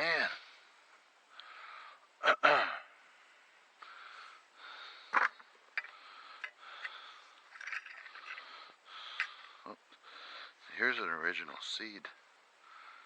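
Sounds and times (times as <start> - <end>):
soft breathing: 0.4 - 2.2, 2.9 - 10.8, 12.6 - 13.0.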